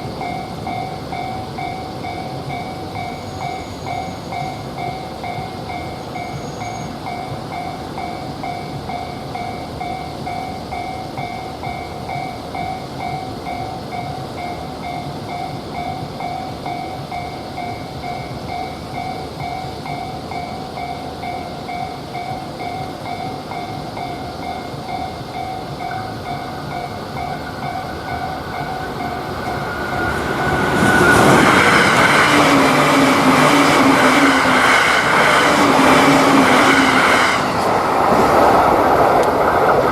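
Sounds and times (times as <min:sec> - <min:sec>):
train passing loudly: 0:00.0 - 0:39.9.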